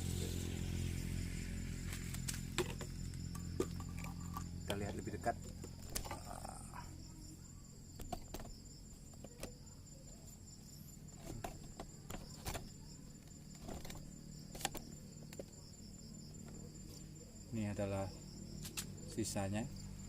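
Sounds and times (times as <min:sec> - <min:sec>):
crickets chirring: 0:00.0 - 0:20.0.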